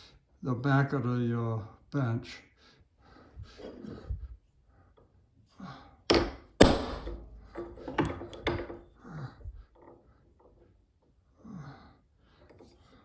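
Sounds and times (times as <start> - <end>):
wooden thunks and knocks: 6.1 - 9.0.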